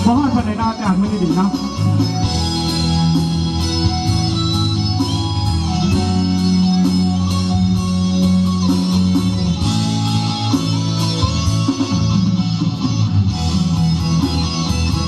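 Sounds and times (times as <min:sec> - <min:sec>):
bass: 0:00.0 - 0:15.0
electric guitar: 0:00.0 - 0:15.0
live band playing pop music: 0:00.0 - 0:15.0.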